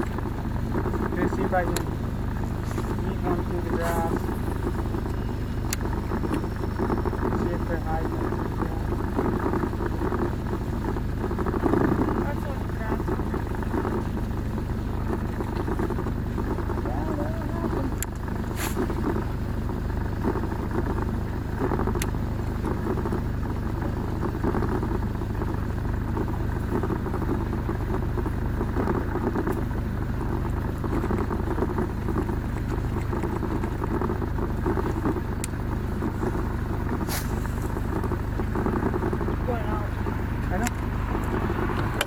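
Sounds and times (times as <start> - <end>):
boat motor droning: 0.0 - 42.0.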